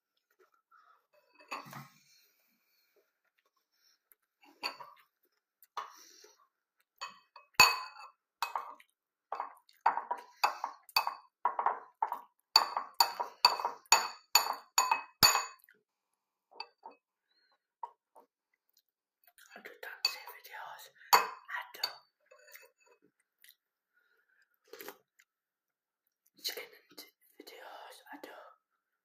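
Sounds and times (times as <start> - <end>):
spoon clinking against bowl: 7.0 - 8.7, 9.4 - 15.6.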